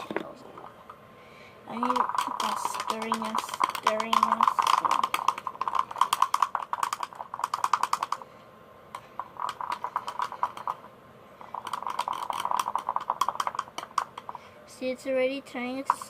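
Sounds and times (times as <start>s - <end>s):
pencil tapping bowl stirring slime: 1.7s - 8.3s, 9.0s - 14.5s, 15.6s - 16.0s.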